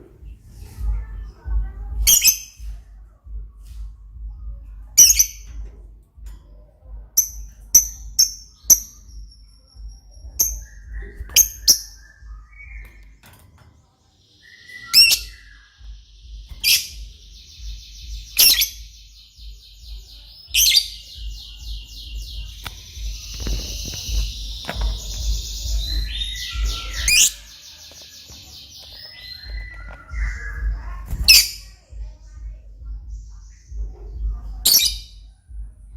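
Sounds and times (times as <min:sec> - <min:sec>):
bird chirping: 0:01.1 - 0:35.7
bird chattering trills: 0:14.4 - 0:32.4.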